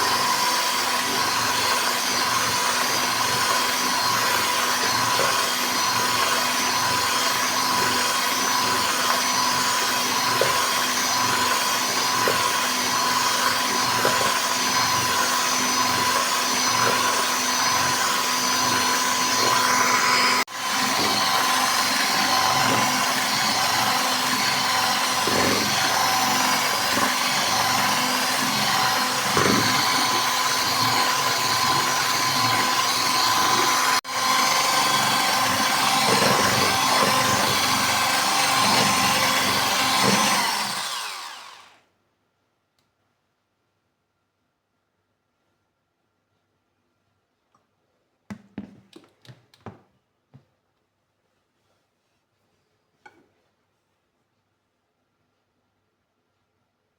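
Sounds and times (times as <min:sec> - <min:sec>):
electric mixer whining: 0:00.0 - 0:41.8.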